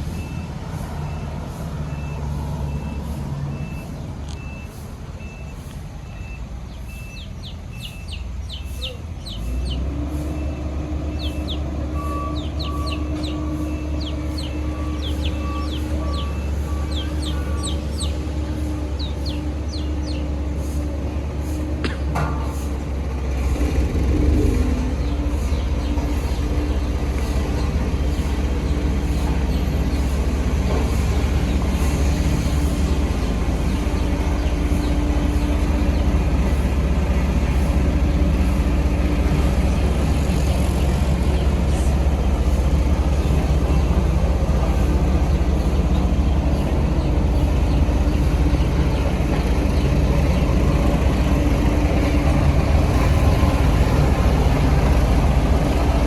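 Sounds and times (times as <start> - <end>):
reversing alarm beeping: 0.0 - 8.6, 9.3 - 20.2
heavy diesel machinery running: 0.0 - 56.0.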